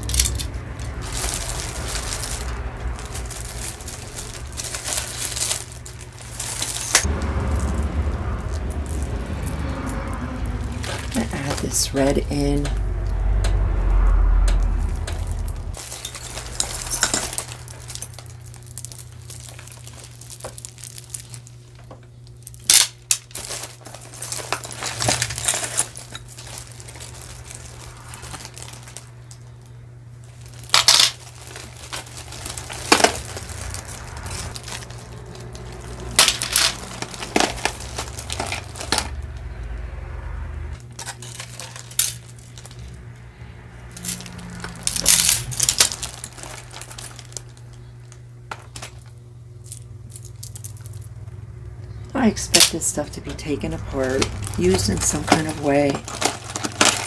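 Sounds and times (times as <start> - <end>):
metal jewelry clinking: 0.0 - 7.2, 15.0 - 21.4, 22.4 - 29.0, 30.6 - 39.2, 43.9 - 47.4
handling noise: 0.0 - 39.7, 40.8 - 51.4, 52.5 - 57.0.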